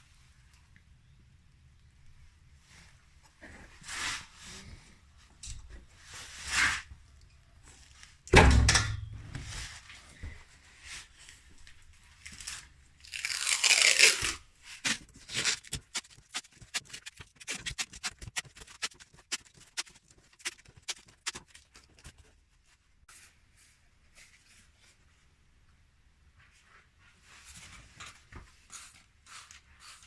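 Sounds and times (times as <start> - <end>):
long tearing rip: 12.2 - 21.6.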